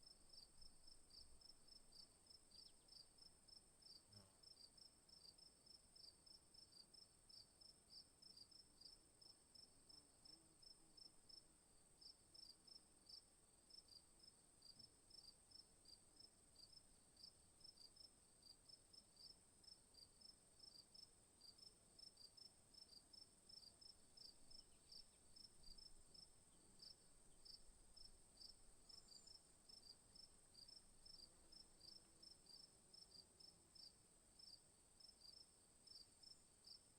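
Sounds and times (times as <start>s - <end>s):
crickets chirping: 19.2s - 36.9s.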